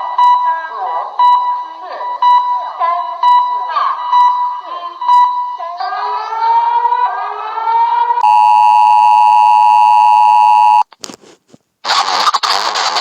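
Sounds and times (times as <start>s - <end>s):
loud steady alarm chord: 8.2s - 10.8s
harsh static noise: 8.2s - 11.2s, 11.8s - 13.0s.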